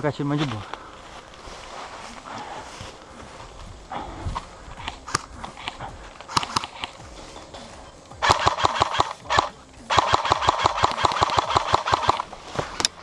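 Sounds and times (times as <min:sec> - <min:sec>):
airsoft rifle firing full auto: 0:08.2 - 0:12.4.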